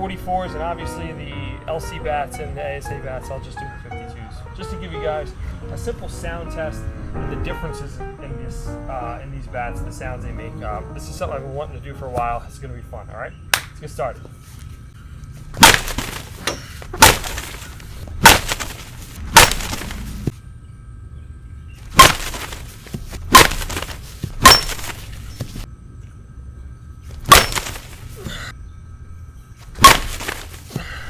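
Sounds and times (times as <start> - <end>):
bats striking softballs: 15.4 - 20.3, 21.9 - 25.6, 27.2 - 28.3, 29.8 - 30.8.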